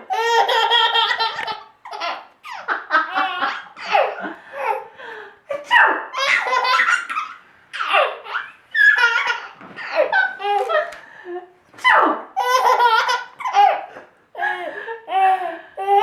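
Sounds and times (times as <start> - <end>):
baby laughing: 0.0 - 4.9, 5.5 - 11.0, 12.4 - 14.1.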